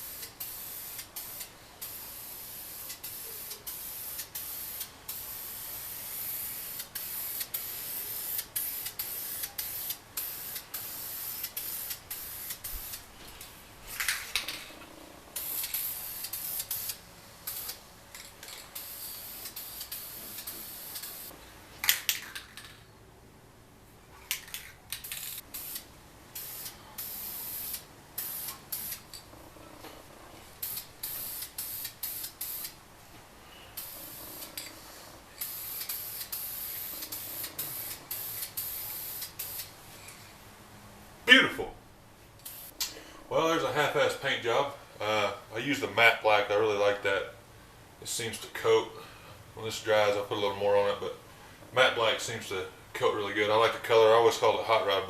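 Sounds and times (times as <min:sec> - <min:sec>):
spray paint can hissing: 0:00.0 - 0:13.1, 0:15.4 - 0:21.3, 0:24.3 - 0:29.2, 0:30.6 - 0:32.8, 0:33.8 - 0:39.8, 0:42.4 - 0:42.8.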